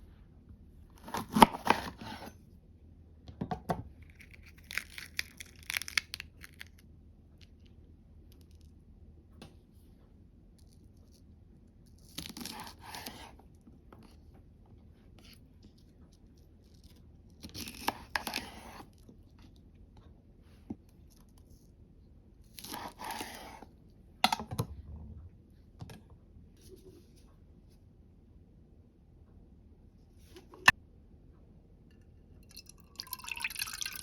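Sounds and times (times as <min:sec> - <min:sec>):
vegetables tearing and crunching: 0:04.1 - 0:06.8, 0:12.0 - 0:13.1.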